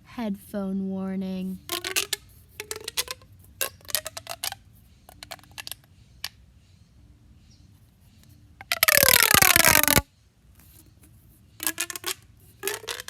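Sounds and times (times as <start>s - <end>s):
plastic clicks of fidget toys: 1.6s - 6.4s, 8.2s - 10.0s, 10.6s - 13.0s.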